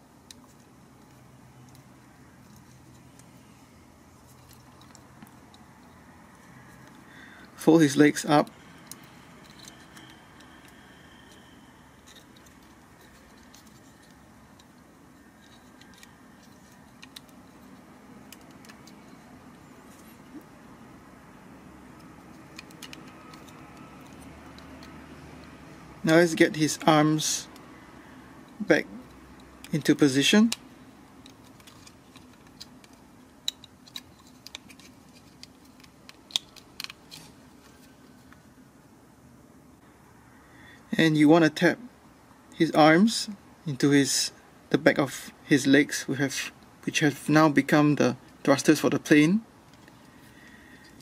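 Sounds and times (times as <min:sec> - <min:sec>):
plastic toy clicks and rubbing: 0:08.4 - 0:20.4, 0:22.0 - 0:25.6, 0:28.5 - 0:38.3.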